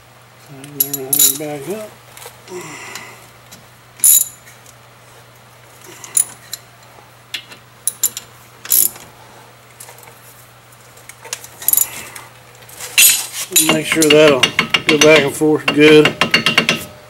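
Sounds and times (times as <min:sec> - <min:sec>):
steady low hum: 0:00.0 - 0:17.0
metallic clicks and clanks of tools: 0:04.0 - 0:04.4, 0:07.4 - 0:09.0, 0:11.2 - 0:11.9, 0:13.0 - 0:16.9.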